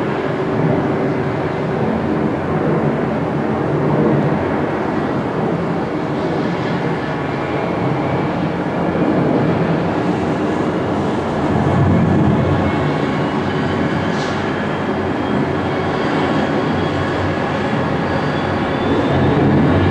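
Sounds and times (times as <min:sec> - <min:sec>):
jet engines rumbling: 0:00.0 - 0:19.9
high turbine whine: 0:07.0 - 0:19.9.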